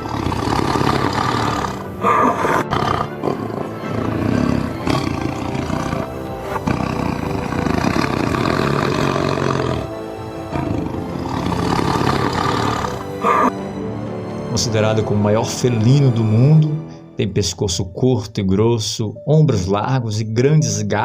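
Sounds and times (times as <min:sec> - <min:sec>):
tiger roaring: 0:00.0 - 0:13.6
background music: 0:00.0 - 0:21.0.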